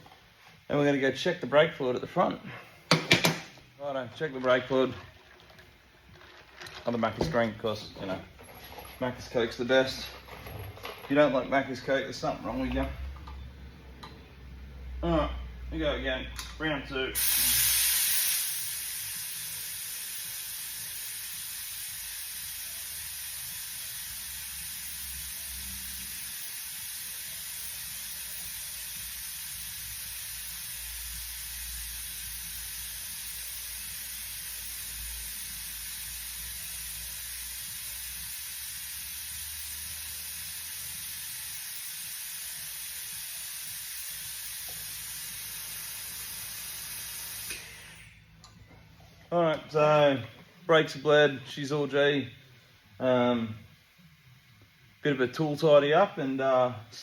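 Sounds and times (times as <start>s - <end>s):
compressed air hissing: 17.2s - 48.3s.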